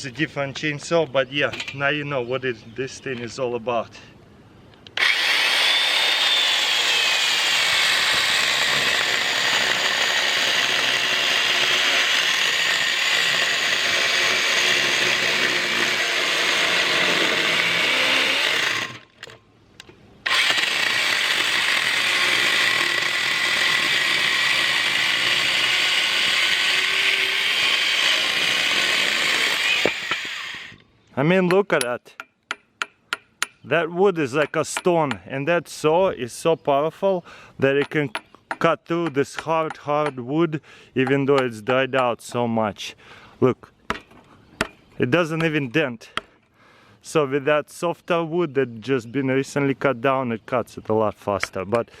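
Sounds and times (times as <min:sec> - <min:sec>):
electric chainsaw cutting log: 0:05.0 - 0:19.2, 0:20.2 - 0:30.8.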